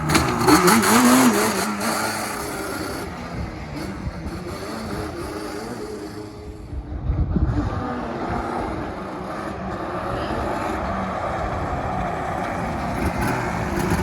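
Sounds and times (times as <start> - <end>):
two-stroke engine running: 11.2 - 14.0.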